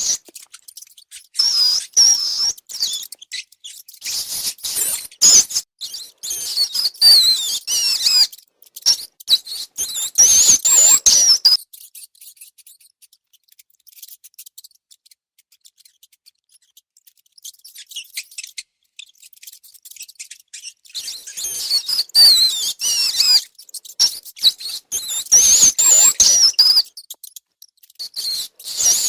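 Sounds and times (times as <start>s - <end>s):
faint scratching and clicks: 0.0s - 6.9s, 11.7s - 22.3s
rats squeaking: 0.0s - 29.0s.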